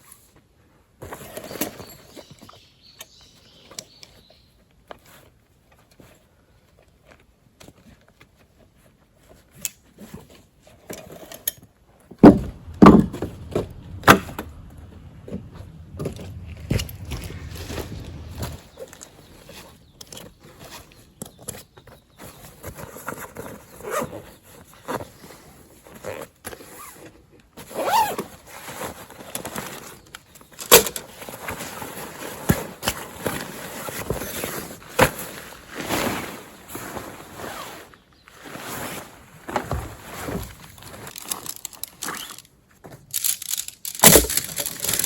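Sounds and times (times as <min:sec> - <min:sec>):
knocks on wooden deck: 0:12.2 - 0:14.2
camping gear clicks and knocks: 0:40.5 - 0:45.0.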